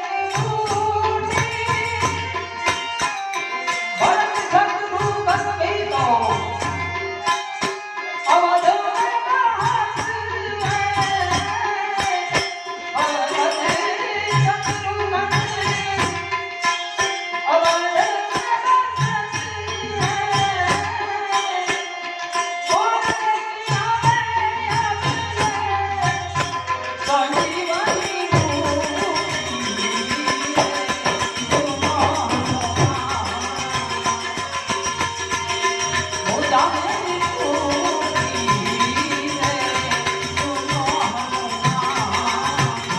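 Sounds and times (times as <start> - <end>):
jingling hand percussion: 0.0 - 42.9
tabla: 0.0 - 42.9
person singing: 24.8 - 34.9, 36.1 - 42.9.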